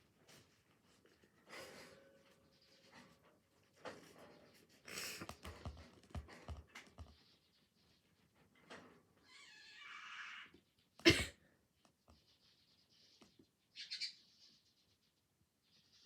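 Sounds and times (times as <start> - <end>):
person sniffing: 4.9 - 5.3.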